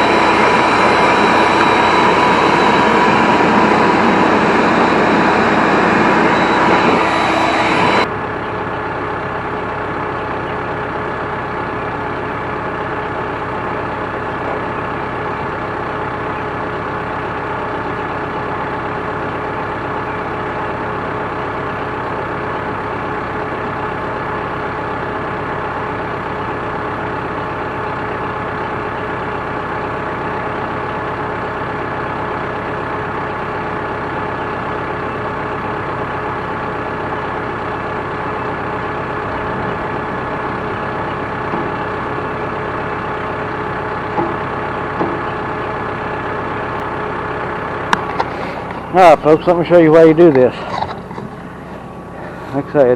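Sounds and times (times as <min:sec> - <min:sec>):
loud rushing sound: 0:00.0 - 0:08.1
engine idling: 0:00.0 - 0:52.9.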